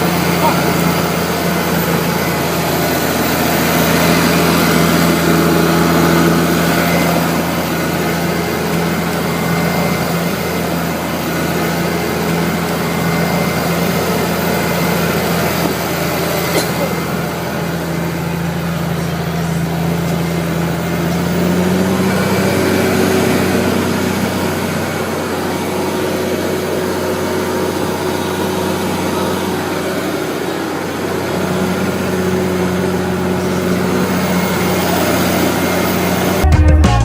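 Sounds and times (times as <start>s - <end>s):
tractor engine running: 0.0s - 37.0s.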